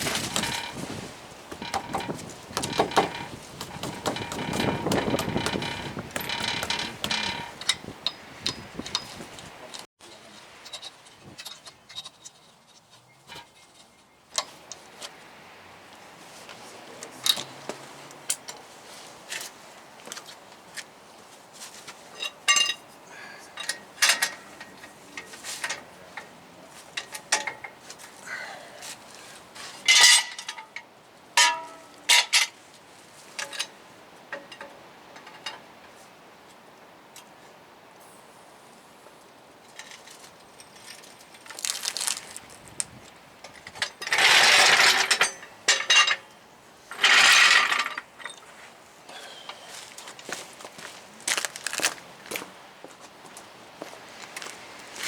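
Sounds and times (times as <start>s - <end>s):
metal tools clinking and clanking: 0.1s - 0.8s, 1.5s - 9.8s, 22.2s - 22.8s, 29.9s - 30.8s, 31.4s - 32.6s, 43.7s - 48.4s.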